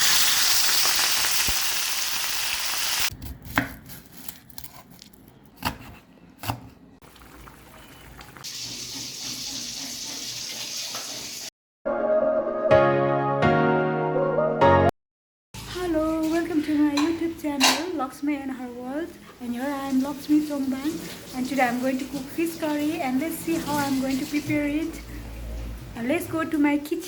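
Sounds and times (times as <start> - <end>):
food sizzling in hot oil: 0.0 - 3.1, 8.2 - 11.5
music: 11.8 - 14.9.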